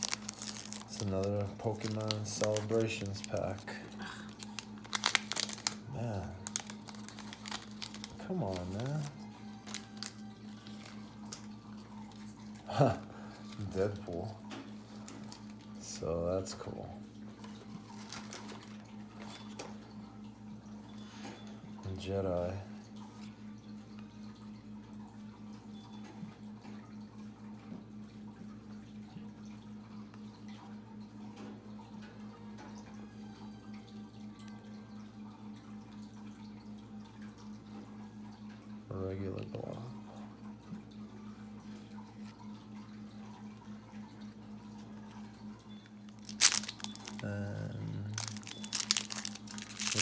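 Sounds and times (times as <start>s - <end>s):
trading cards clicking and rustling: 0.0s - 11.5s, 14.9s - 15.6s, 17.5s - 19.7s, 46.0s - 50.0s
foil pack crinkling: 0.0s - 14.2s, 14.8s - 15.7s, 17.5s - 19.3s, 46.0s - 50.0s
low electrical hum: 0.0s - 50.0s.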